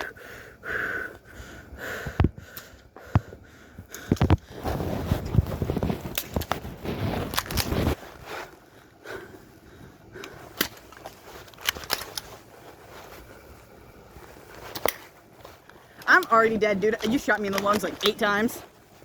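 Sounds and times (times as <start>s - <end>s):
rustling and scuffling: 4.0s - 19.0s.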